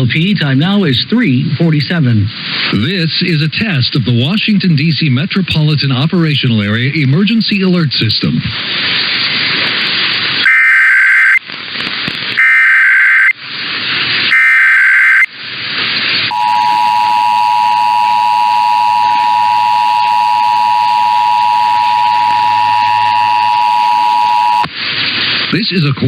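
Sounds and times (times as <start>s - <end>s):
radio hiss: 0.0s - 26.0s
two-tone attention signal: 14.3s - 15.3s, 16.3s - 24.7s
warbling data tones: 14.3s - 15.3s, 16.3s - 24.7s.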